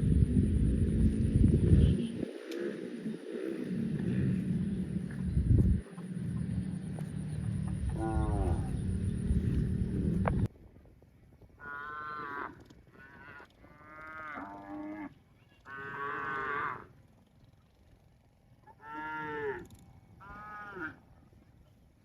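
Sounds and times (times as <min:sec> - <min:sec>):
cattle mooing: 0:07.8 - 0:09.9, 0:11.6 - 0:16.9.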